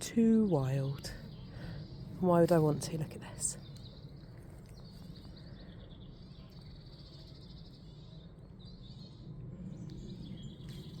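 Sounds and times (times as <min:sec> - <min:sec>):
songbirds trilling: 0:00.0 - 0:11.0.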